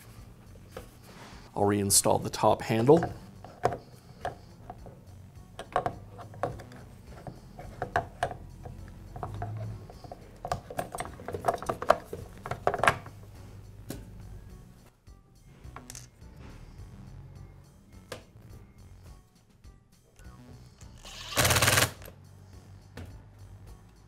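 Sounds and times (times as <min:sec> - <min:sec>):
hard parts clicking and clinking: 0:05.6 - 0:13.1.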